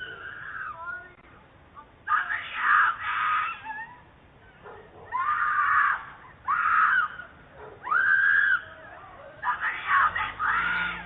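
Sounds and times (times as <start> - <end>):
woman screaming: 2.2 - 4.1, 5.1 - 11.0.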